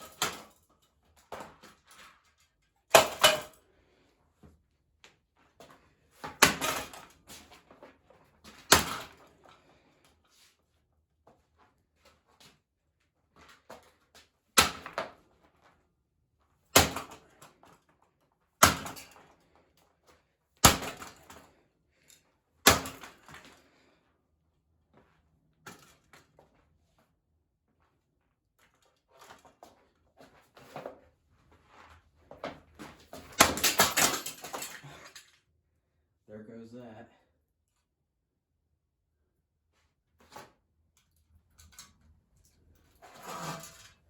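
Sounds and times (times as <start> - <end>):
sledgehammer hitting ceiling fan: 16.8 - 17.2, 18.6 - 19.1, 20.6 - 21.3
metal parts rattling: 33.2 - 35.3.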